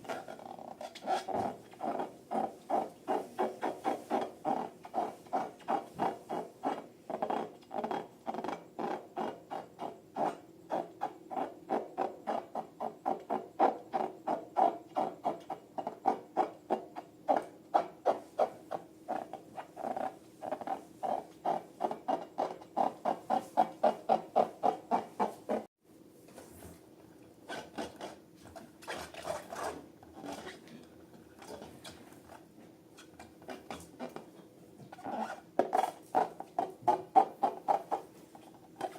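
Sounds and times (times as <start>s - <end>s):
squeaky balloon strokes: 34.9s - 38.9s.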